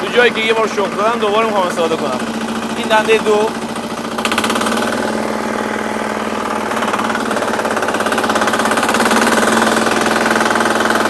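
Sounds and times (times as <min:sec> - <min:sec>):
garden tractor engine running: 0:00.0 - 0:11.0.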